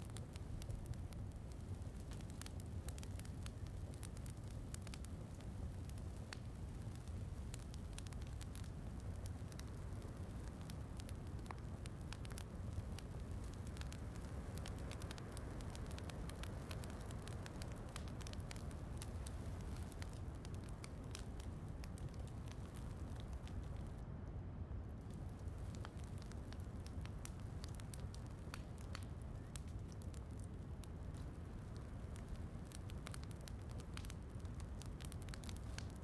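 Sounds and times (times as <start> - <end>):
rain patter: 0.0 - 23.9
wood fire crackling: 0.0 - 36.0.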